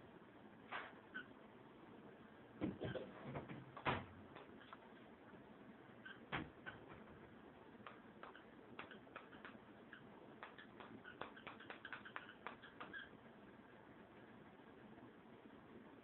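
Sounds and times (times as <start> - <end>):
light clicks and taps: 7.8 - 9.6, 10.4 - 13.1.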